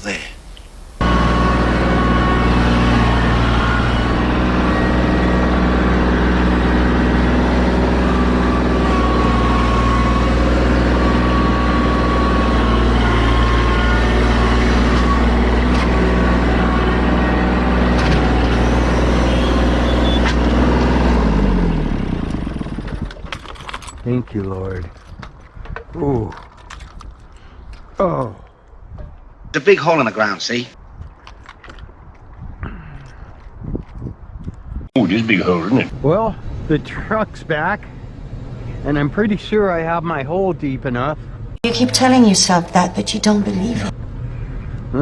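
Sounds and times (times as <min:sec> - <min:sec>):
heavy truck engine running: 0:01.0 - 0:23.3.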